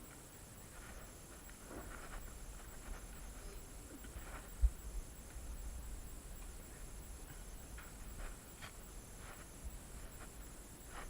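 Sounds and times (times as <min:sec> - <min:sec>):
footsteps and scuffs on floor: 0:00.7 - 0:04.8, 0:07.3 - 0:11.0.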